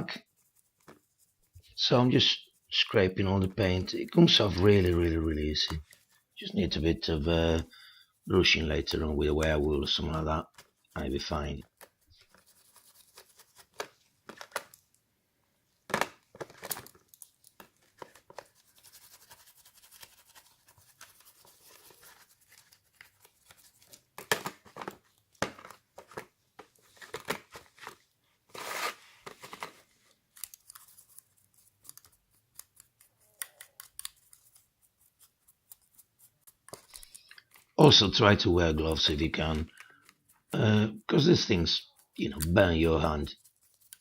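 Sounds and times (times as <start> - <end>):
paint being scraped off metal: 0.2 - 13.8.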